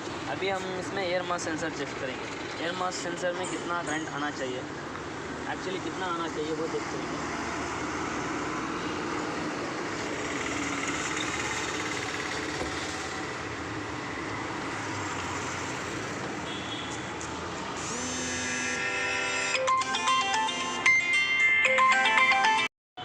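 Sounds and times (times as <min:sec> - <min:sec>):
traffic background noise: 0:00.0 - 0:20.6
phone ringtone melody: 0:18.5 - 0:22.7.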